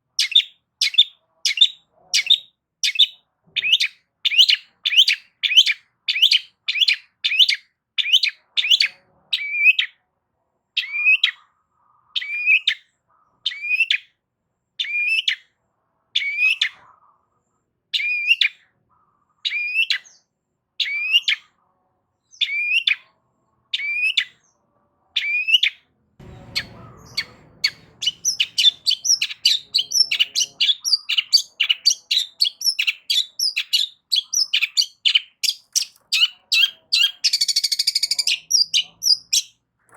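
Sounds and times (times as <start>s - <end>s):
bird calling: 25.2s - 39.5s.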